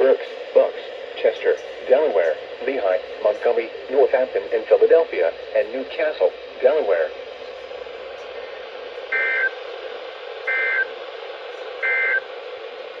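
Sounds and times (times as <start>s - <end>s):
radio static hiss: 0.0s - 13.0s
digital data tone bursts: 9.1s - 9.5s, 10.5s - 10.9s, 11.8s - 12.2s.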